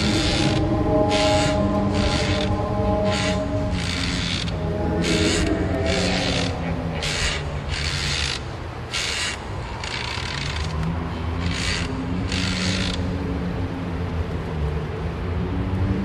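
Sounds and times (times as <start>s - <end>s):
low steady hum: 0.0s - 8.9s
mechanical ratcheting: 5.2s - 13.0s.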